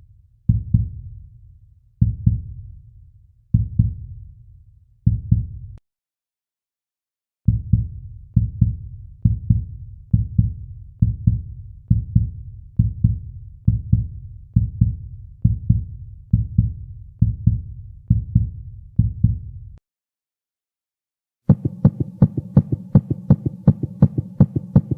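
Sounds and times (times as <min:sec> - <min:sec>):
heartbeat thumps: 0:02.0 - 0:02.5, 0:03.5 - 0:04.1, 0:05.1 - 0:05.6, 0:07.5 - 0:19.6, 0:21.5 - 0:24.9.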